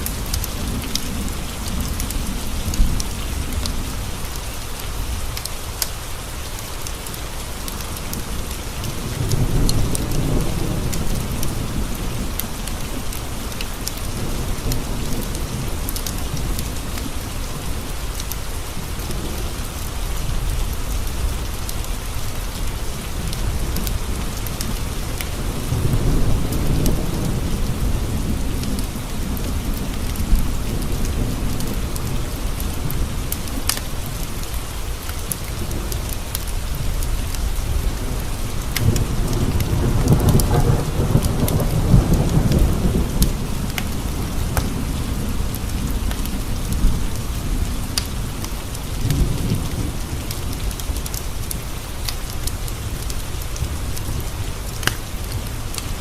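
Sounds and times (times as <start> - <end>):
rain pattering on windowpanes: 0.0 - 56.0
low rolls of thunder: 8.1 - 18.0, 18.6 - 34.2, 35.5 - 51.5.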